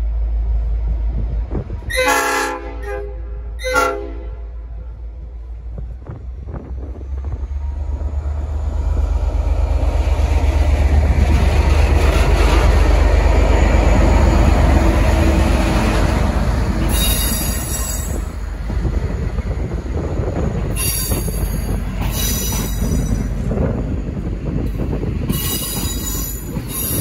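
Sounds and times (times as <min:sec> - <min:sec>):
diesel locomotive engine: 0:00.0 - 0:27.0
locomotive air horn blasts: 0:01.9 - 0:04.6.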